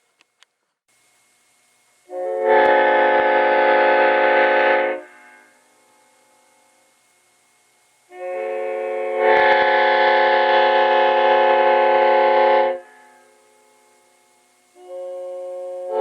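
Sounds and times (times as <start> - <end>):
loud air horn chord: 2.1 - 5.9, 8.1 - 13.4, 14.8 - 16.0.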